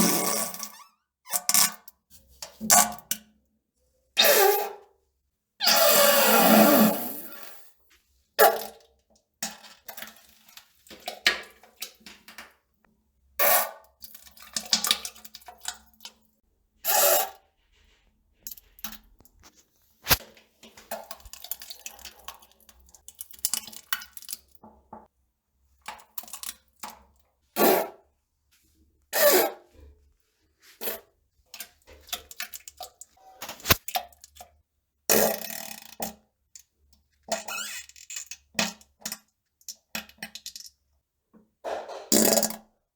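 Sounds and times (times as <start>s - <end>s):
farts: 5.6s - 7.6s, 42.1s - 42.6s
flatulence bursts: 5.6s - 7.6s.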